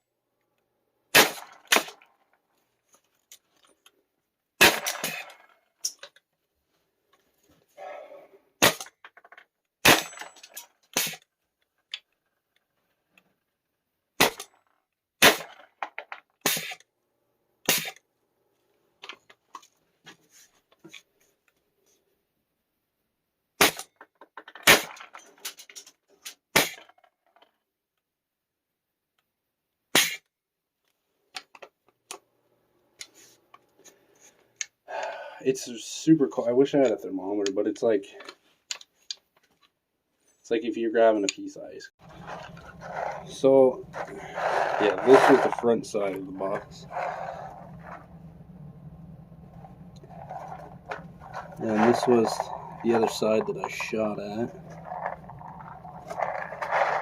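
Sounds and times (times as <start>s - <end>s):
airsoft gun shots: 1.1s - 2.0s, 4.6s - 5.3s, 8.6s - 8.9s, 9.8s - 10.1s, 14.2s - 14.4s, 15.2s - 15.6s, 17.7s - 18.0s, 23.6s - 23.9s, 24.6s - 24.9s, 26.6s - 26.8s, 30.0s - 30.2s.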